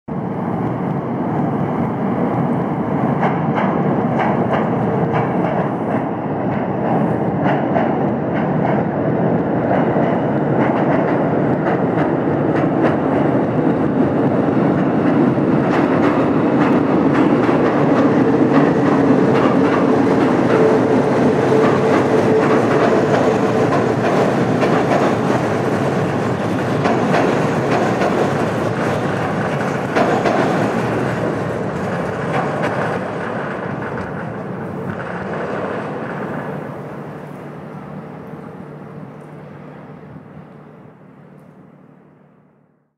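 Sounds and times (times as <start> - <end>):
train rumbling on rails: 0.1 - 42.9
wheels clattering on track: 9.6 - 37.4.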